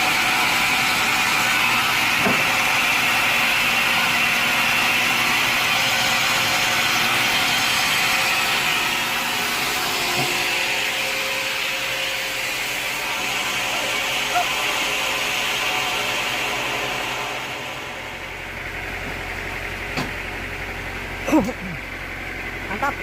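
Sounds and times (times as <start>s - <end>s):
sawmill saw cutting wood: 0.0s - 20.2s.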